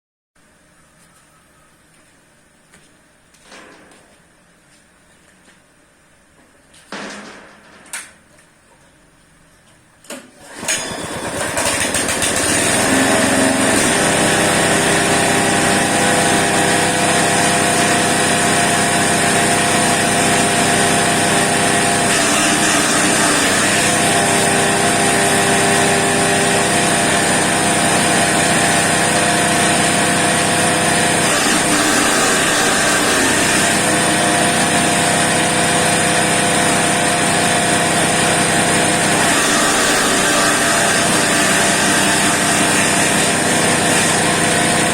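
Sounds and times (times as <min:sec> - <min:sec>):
grass chopper machine whining: 0:10.4 - 0:44.9.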